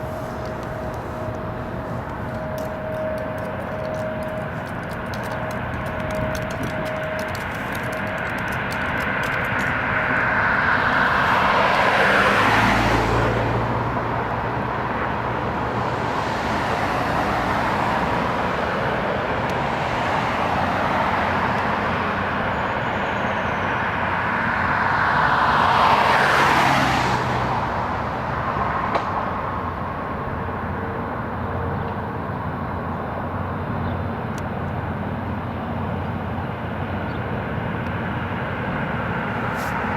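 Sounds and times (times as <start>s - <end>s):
road traffic noise: 0.0s - 39.9s
vehicles passing close by: 0.0s - 39.9s.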